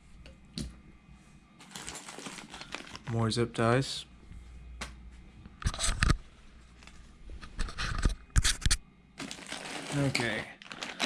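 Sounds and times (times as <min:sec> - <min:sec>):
rummaging through tool bag: 0:09.2 - 0:11.0.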